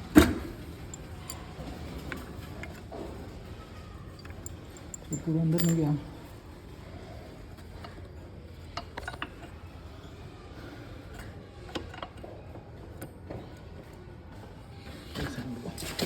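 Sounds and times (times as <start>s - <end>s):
metallic clicks of tools: 0.8s - 1.5s, 4.2s - 6.0s.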